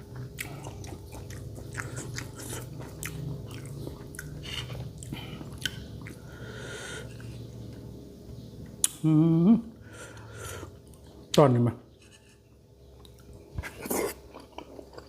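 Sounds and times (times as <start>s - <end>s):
person chewing and crunching: 0.0s - 6.4s, 13.0s - 15.0s.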